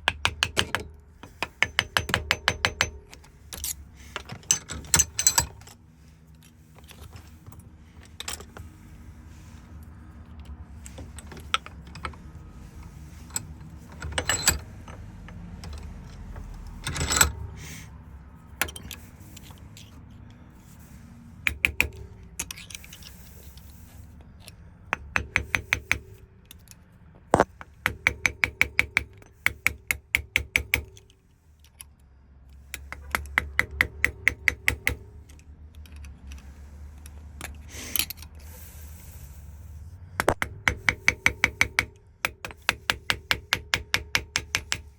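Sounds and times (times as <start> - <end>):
knocks on metal lock parts: 0.0 - 3.1, 40.2 - 44.9.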